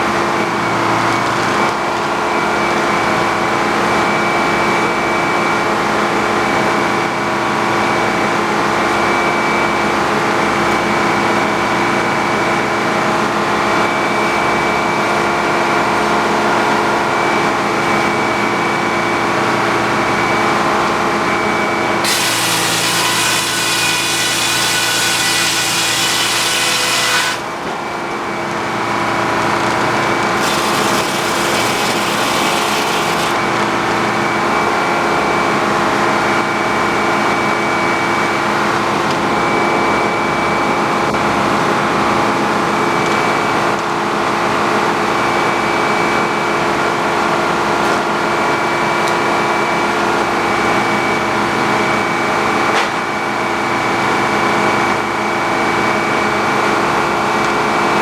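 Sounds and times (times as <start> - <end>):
sawmill running: 19.3 - 35.1
saw blade cutting log: 22.0 - 27.6, 30.3 - 33.5.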